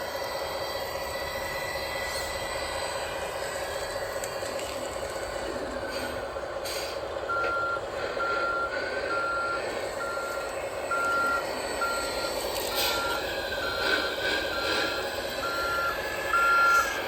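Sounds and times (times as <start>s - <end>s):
simulated engine hum: 0.0s - 17.0s
backup alarm beeping: 7.3s - 14.8s, 15.4s - 17.0s.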